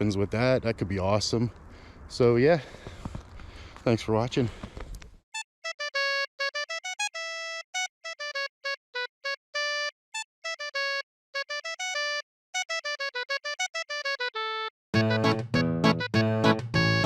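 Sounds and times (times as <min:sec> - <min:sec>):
bouncy electronic melody: 0:05.3 - 0:17.0.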